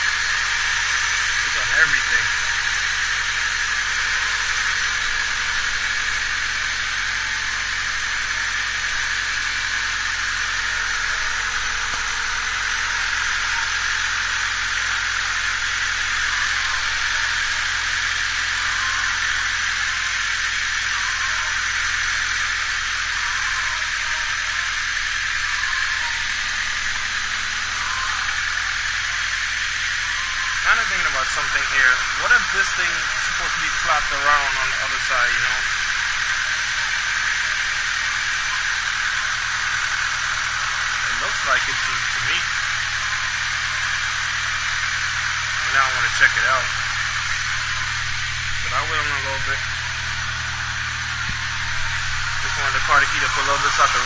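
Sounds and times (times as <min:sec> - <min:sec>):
car engine idling: 0:00.0 - 0:54.0.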